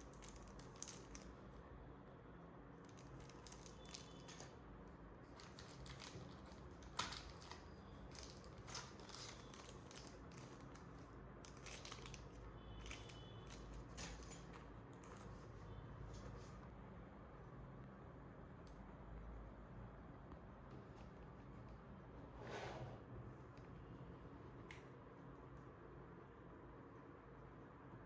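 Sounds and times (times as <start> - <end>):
packaging rustling and crinkling: 0.0 - 1.3, 2.8 - 4.6, 5.2 - 15.4.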